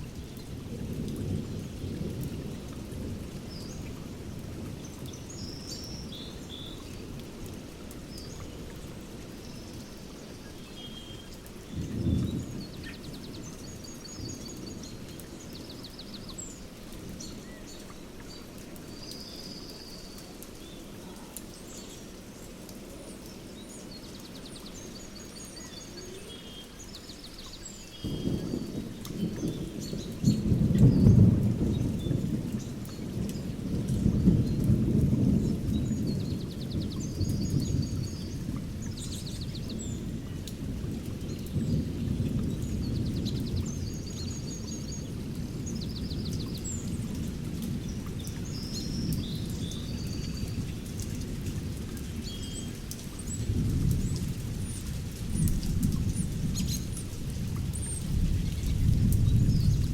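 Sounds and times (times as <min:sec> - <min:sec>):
thunder rumbling: 0:28.0 - 0:52.8, 0:53.4 - 0:59.9.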